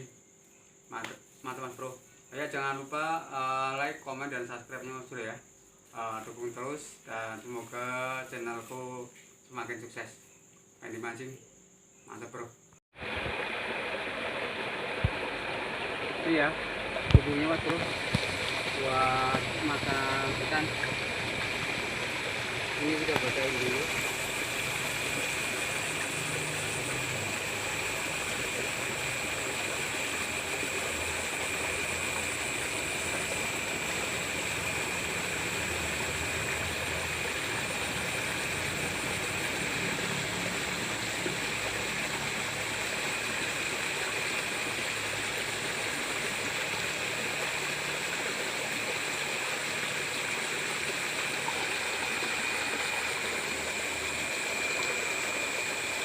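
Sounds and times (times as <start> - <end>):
water rushing in a ditch: 13.0 - 56.0
steady high-pitched tones: 13.6 - 56.0.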